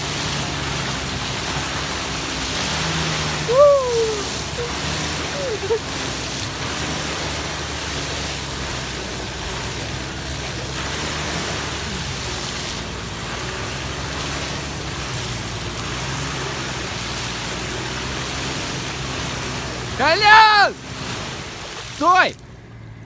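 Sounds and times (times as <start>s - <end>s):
car engine at high revs: 0.0s - 23.0s
rushing noise: 0.0s - 23.0s
wheels spinning in mud: 0.0s - 23.0s.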